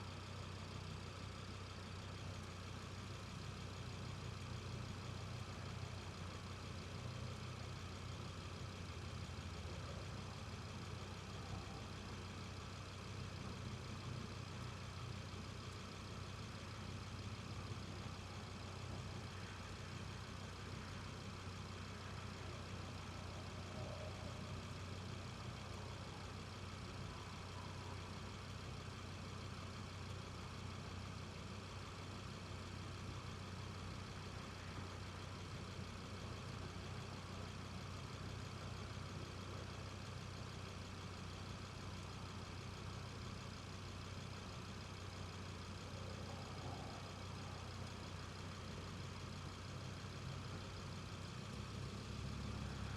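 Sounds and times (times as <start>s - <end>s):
car engine droning steadily: 0.0s - 52.9s.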